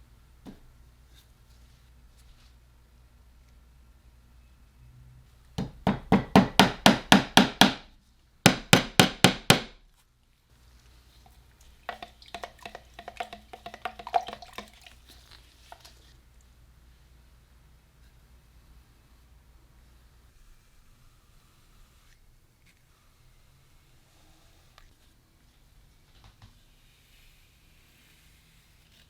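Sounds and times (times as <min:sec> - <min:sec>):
irregular clicks and taps: 0:11.9 - 0:14.8.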